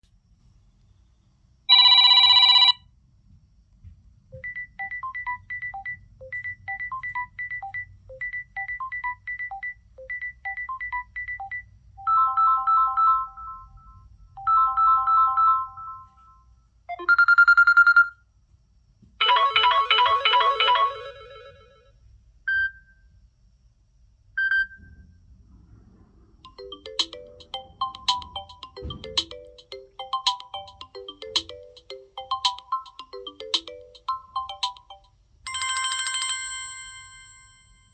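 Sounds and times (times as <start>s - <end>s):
phone ringtones and alert tones: 1.7s - 2.8s, 4.4s - 16.2s, 16.9s - 18.1s, 19.2s - 21.9s, 26.5s - 37.6s
marimba-like melody: 26.5s - 35.1s.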